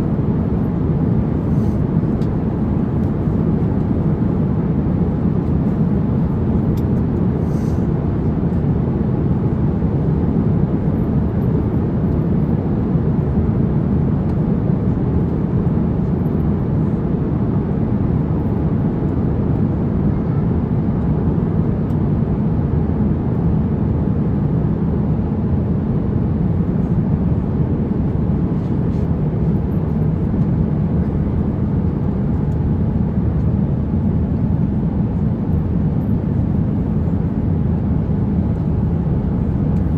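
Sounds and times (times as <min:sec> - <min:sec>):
airplane cabin engine rumble: 0:00.0 - 0:39.9.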